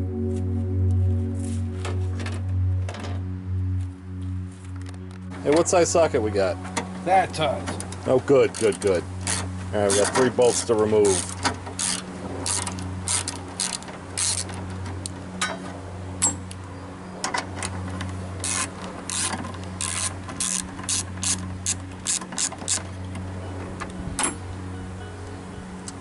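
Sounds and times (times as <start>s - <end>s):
steady low hum: 0.0s - 26.0s
socket ratchet clicking: 18.4s - 22.9s.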